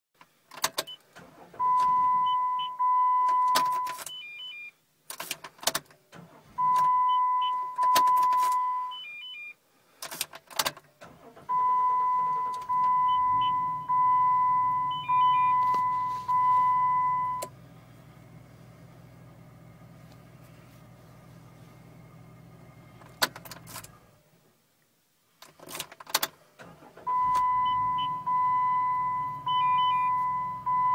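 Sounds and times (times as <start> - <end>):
loud steady beep: 1.6 - 4.7, 6.6 - 9.6, 11.5 - 17.5, 27.1 - 30.9
low engine hum: 11.1 - 24.2.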